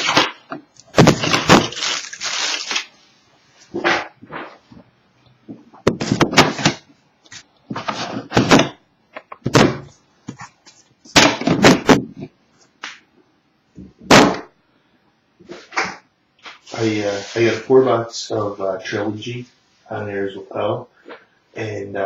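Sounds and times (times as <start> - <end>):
cardboard and plastic rustling: 0.0 - 3.0.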